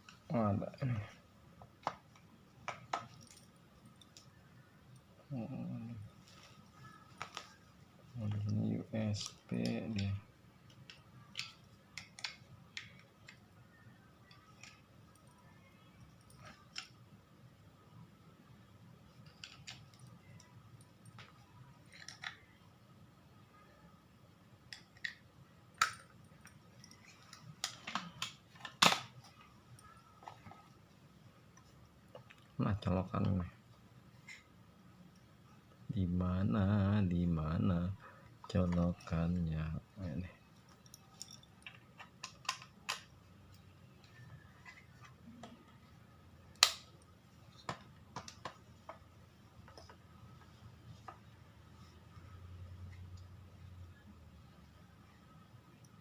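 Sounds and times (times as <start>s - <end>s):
small objects clicking and knocking: 9.2s - 13.5s, 19.2s - 22.5s, 40.7s - 45.6s.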